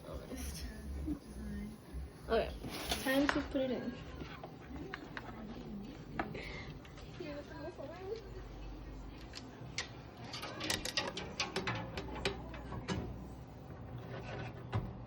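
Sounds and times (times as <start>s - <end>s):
clicks and knocks of computer parts: 9.8s - 13.1s.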